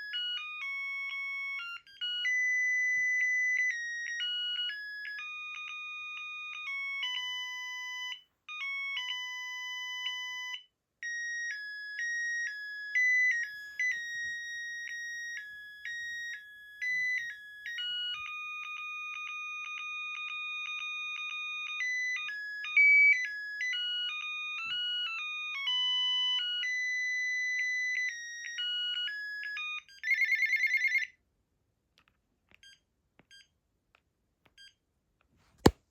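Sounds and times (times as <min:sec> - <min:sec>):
electronic phone ringtone melody: 0:00.0 - 0:10.5.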